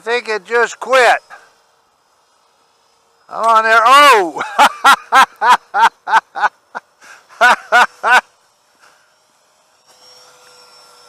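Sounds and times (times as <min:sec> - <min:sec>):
faint steady whine: 0:00.0 - 0:11.0
man laughing: 0:04.2 - 0:08.4.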